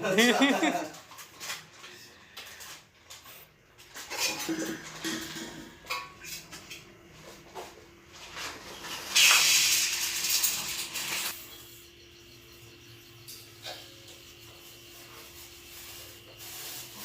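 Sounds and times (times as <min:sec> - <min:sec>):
dishes and utensils clattering: 0:03.8 - 0:06.8.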